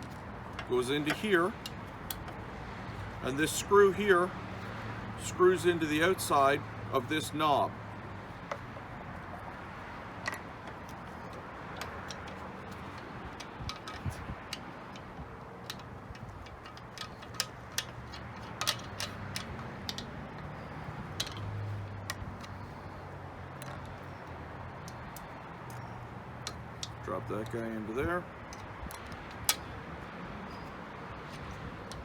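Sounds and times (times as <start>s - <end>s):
small parts clicking: 10.2s - 27.6s.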